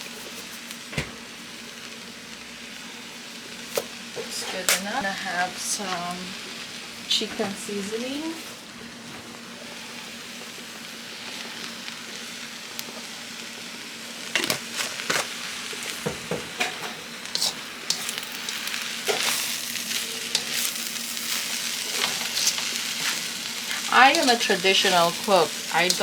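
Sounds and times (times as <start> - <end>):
rice sizzling in a pan: 0.0 - 26.0
spatula scraping a pan: 16.6 - 26.0.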